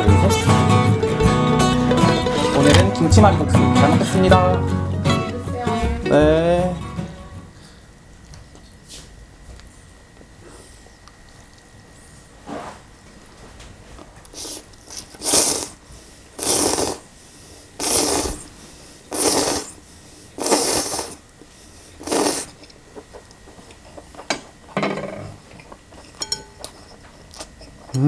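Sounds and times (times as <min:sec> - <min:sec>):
loud noodle slurps: 0:02.1 - 0:03.0, 0:14.4 - 0:15.8, 0:16.4 - 0:17.0, 0:17.8 - 0:18.5, 0:19.1 - 0:19.8, 0:20.4 - 0:21.2, 0:22.0 - 0:22.6.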